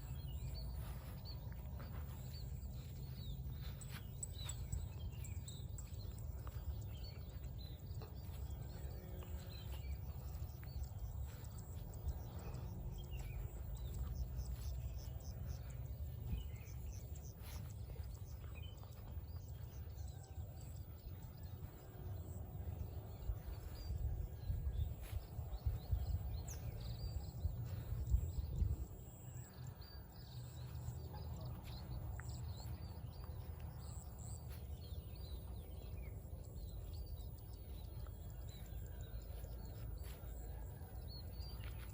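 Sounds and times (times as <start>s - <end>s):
birds chirping: 0.0s - 41.9s
footsteps on a field path: 0.0s - 41.9s
steady low rumble: 0.0s - 41.9s.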